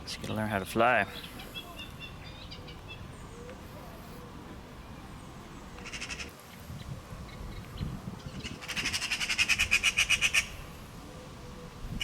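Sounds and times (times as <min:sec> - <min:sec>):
magpies alarm chatter: 0:05.8 - 0:06.3, 0:08.4 - 0:10.6.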